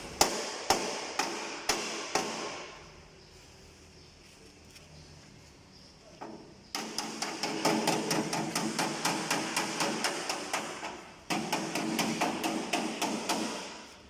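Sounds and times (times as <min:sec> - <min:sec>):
hammer beating sheet metal: 0:00.0 - 0:02.8, 0:06.7 - 0:14.0.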